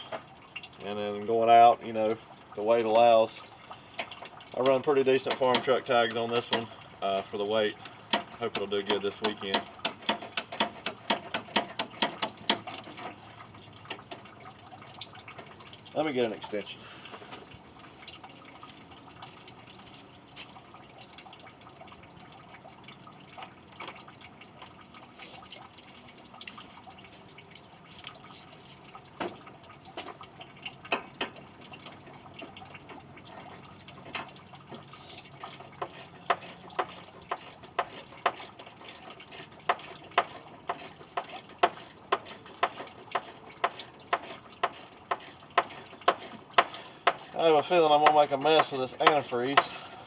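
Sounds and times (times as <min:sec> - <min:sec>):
hand tools clicking and tapping: 0:04.0 - 0:13.1, 0:35.4 - 0:49.9
socket ratchet clicking: 0:35.4 - 0:49.8.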